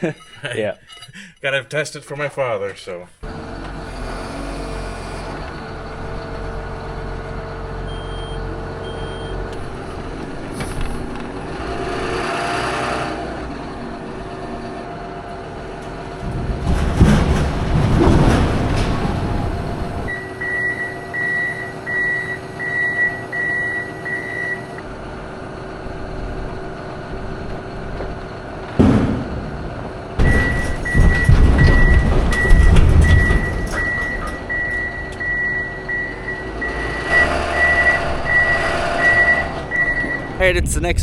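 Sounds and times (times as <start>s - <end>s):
diesel engine running: 3.2s - 41.0s
reversing alarm beeping: 7.9s - 9.4s, 20.1s - 24.8s, 30.2s - 40.4s
loud knock: 28.8s - 34.5s.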